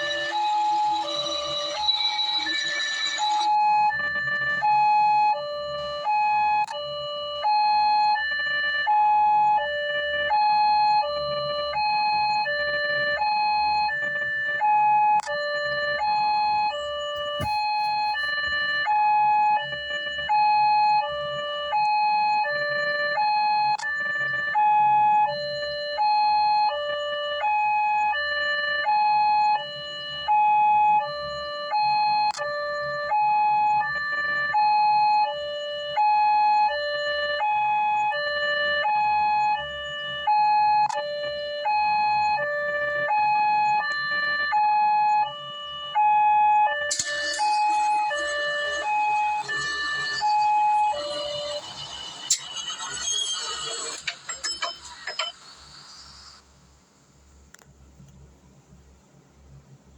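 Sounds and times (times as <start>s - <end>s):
two-tone electronic siren: 0.0s - 56.5s.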